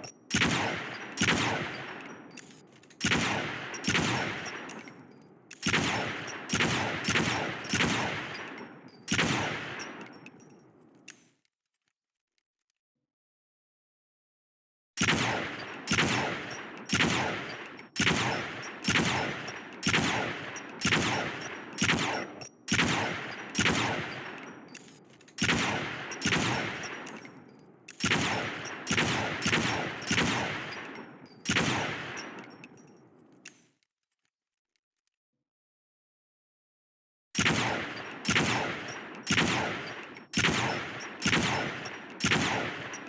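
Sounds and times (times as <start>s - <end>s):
rifle shots echoing: 0.0s - 10.2s, 15.0s - 32.7s, 37.4s - 43.0s.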